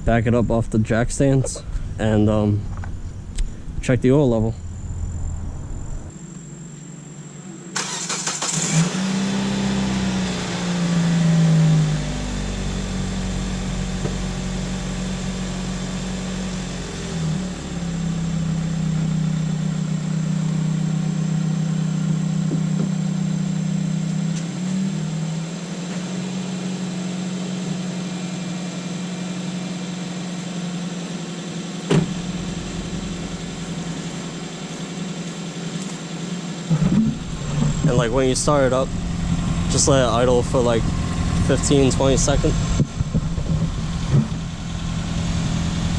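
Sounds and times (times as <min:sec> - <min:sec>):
car engine starting and idling: 0:00.0 - 0:45.9
sharp knock: 0:31.9 - 0:32.2.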